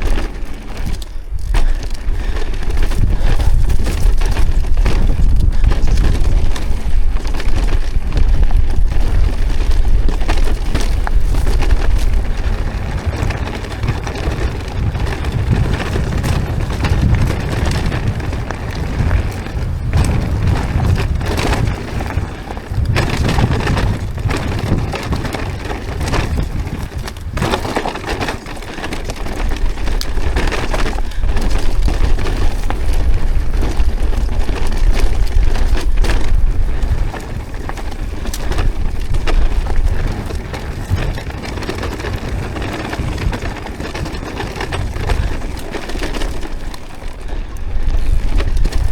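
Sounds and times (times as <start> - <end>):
wind buffeting microphone: 0.0 - 48.9.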